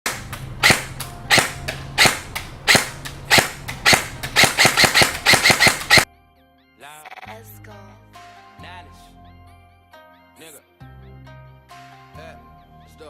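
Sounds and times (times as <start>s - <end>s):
single gunshots: 0.1s - 6.1s.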